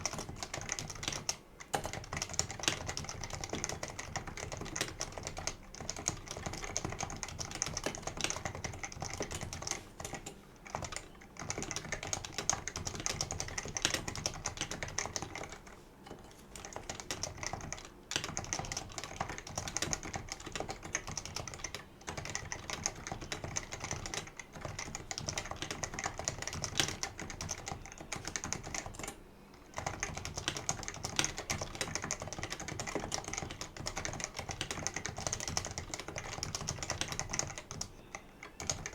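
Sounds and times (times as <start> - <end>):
fast keyboard typing: 0.0 - 38.9.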